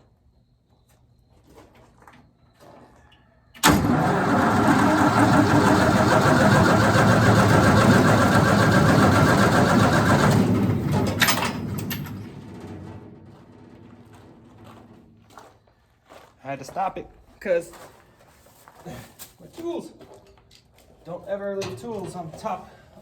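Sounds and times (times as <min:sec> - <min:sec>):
engine cranking on electric starter: 0:03.6 - 0:15.0.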